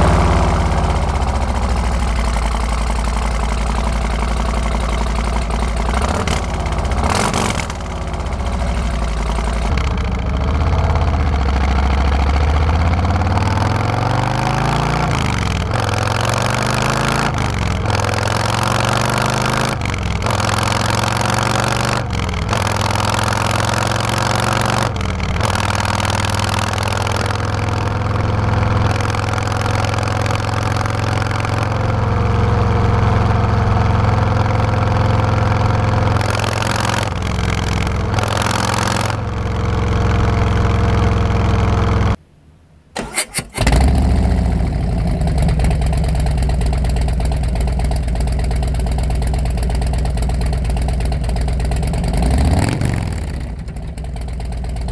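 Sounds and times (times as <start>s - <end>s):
motorcycle engine revving and idling: 0.0s - 42.2s, 43.0s - 54.9s.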